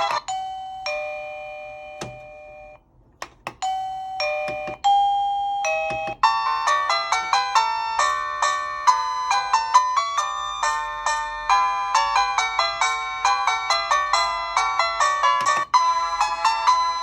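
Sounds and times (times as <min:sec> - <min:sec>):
ding-dong chimes: 0:00.0 - 0:02.8, 0:03.6 - 0:07.1.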